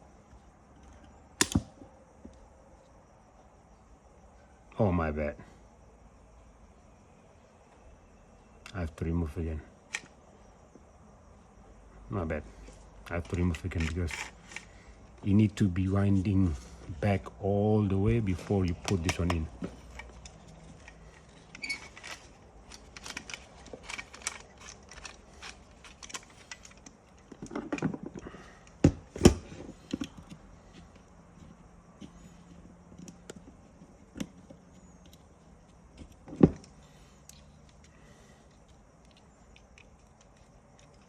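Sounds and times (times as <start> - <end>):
small plastic parts clicking: 13.1 - 14.8, 18.6 - 28.9, 32.9 - 41.0.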